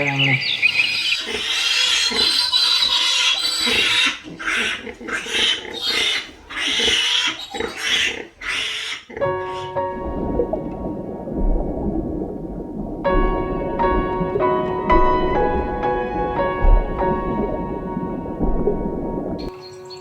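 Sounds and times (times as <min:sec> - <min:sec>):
animal harsh cries: 0:00.0 - 0:09.7.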